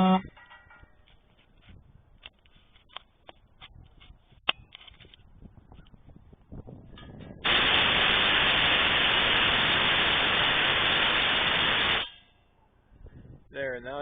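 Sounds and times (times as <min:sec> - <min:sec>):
compressed air hissing through horns: 0:07.4 - 0:12.1.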